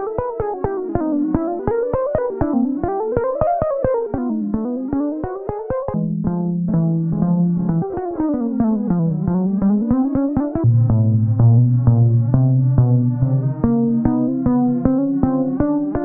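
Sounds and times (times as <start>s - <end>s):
playful synthesizer comedy music: 9.0s - 16.0s
held low bass note: 10.6s - 15.0s.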